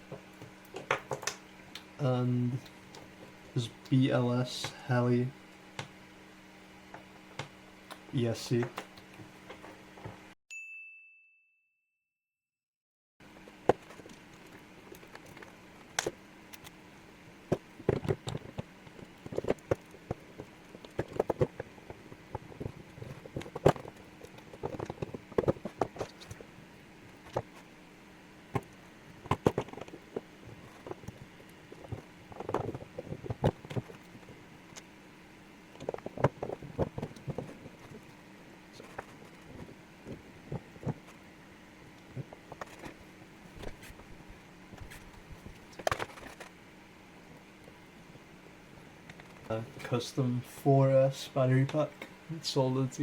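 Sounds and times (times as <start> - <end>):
low steady hum: 0.0 - 11.2, 13.2 - 53.0.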